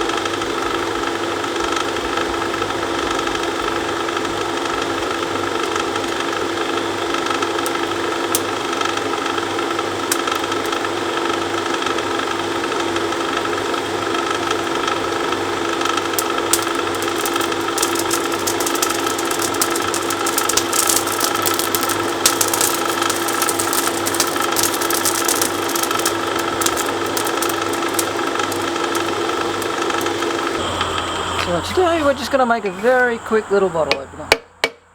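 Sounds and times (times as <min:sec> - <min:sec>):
forge blower hum: 0:00.0 - 0:34.9
fine crackling clicks: 0:01.6 - 0:11.4, 0:15.6 - 0:31.5.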